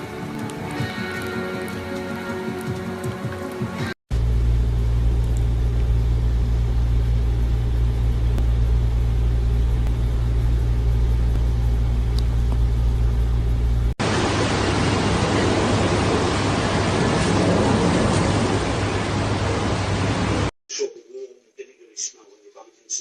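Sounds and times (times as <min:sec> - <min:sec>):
steady low hum: 0:04.1 - 0:20.5.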